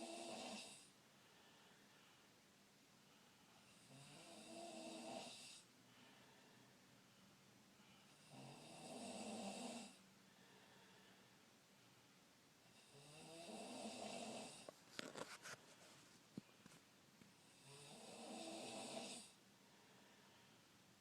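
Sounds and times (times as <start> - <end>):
person snoring: 0.0 - 0.9, 3.7 - 5.7, 8.2 - 10.0, 12.8 - 14.7, 17.5 - 19.4.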